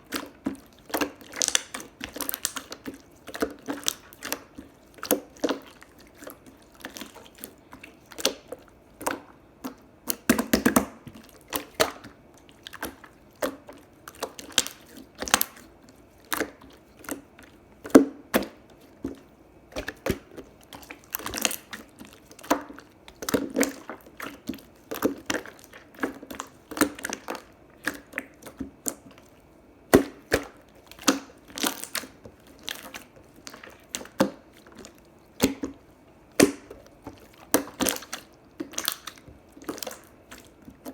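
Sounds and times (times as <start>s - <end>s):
slime clicking pops and squelches: 36.3s - 40.1s.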